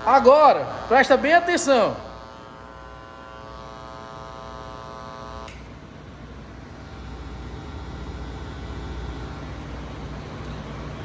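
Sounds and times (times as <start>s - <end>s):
higher electrical buzz: 0.0s - 11.0s
low mains hum: 0.0s - 11.0s
click: 5.4s - 5.7s.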